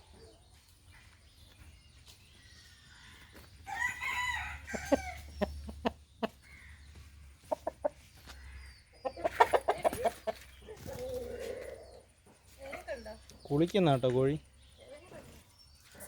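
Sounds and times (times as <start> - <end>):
rooster crowing: 3.7 - 5.3
chicken clucking: 4.7 - 12.4.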